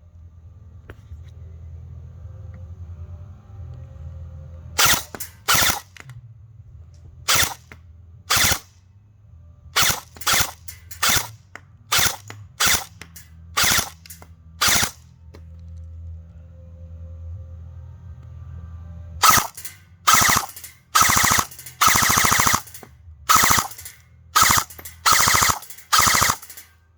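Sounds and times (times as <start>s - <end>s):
airsoft gun shots: 4.8s - 5.9s, 7.3s - 7.6s, 8.3s - 8.7s, 9.8s - 13.0s, 13.6s - 15.0s, 19.2s - 26.7s.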